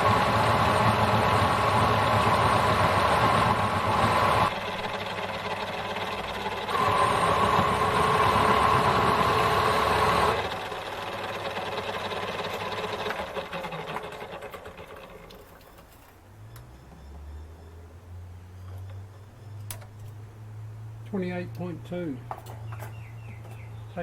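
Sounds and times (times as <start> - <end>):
metal lathe cutting with whine: 0.0 - 14.2.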